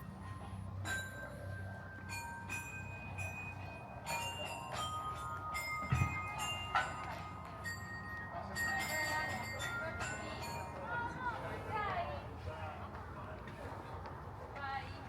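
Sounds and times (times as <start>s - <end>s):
metal chimes ringing: 0.7s - 11.2s.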